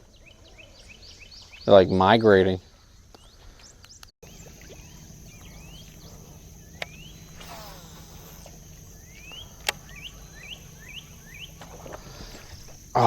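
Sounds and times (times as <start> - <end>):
bird chirps: 0.1 - 13.0
high insect buzz: 4.2 - 13.0
low steady hum: 4.2 - 13.0.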